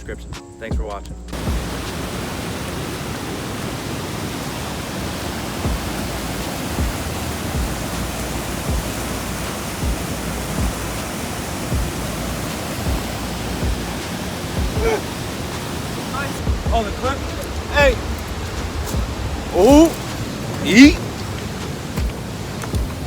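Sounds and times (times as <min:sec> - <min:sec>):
waterfall rushing: 0:01.4 - 0:23.0
low thumps: 0:05.6 - 0:15.7, 0:16.3 - 0:23.0.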